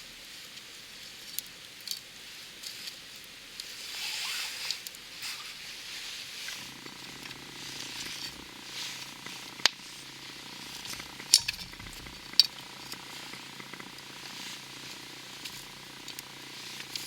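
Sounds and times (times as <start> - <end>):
campfire crackling and hissing: 0.0 - 17.0.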